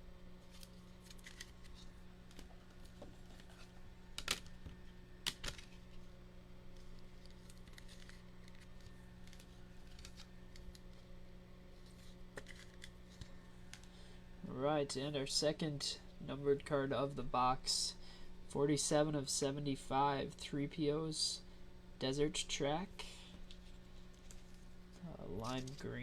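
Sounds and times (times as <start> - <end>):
steady low hum: 0.0 - 26.0
trading cards being handled: 0.4 - 6.1, 6.7 - 14.0, 23.4 - 26.0.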